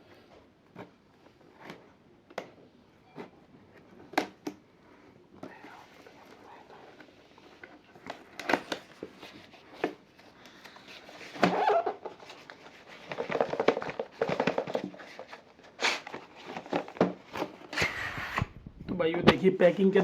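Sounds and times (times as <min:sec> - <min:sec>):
cardboard packing rustling: 0:05.4 - 0:18.7.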